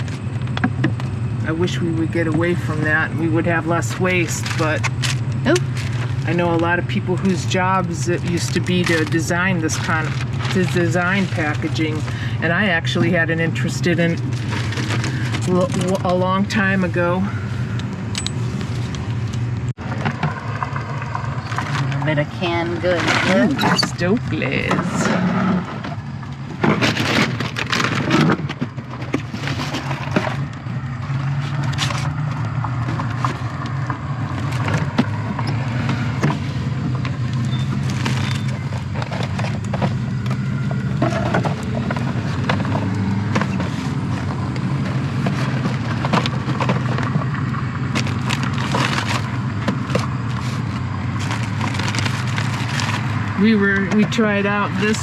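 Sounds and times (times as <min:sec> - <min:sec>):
vehicle engine running: 0:00.0 - 0:55.0
packaged food and cans clunking: 0:24.6 - 0:53.3.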